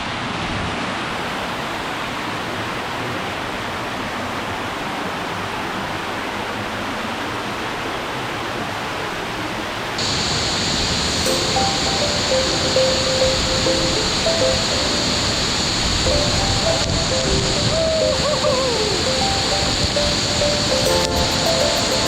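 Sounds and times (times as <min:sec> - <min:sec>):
rushing water: 0:00.0 - 0:22.0
music notes: 0:11.2 - 0:22.0.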